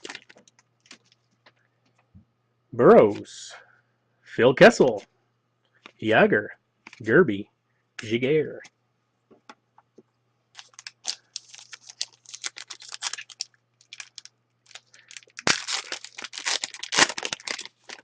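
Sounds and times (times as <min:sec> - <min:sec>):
wrapper tearing and crinkling: 0:00.0 - 0:01.2, 0:10.6 - 0:18.0.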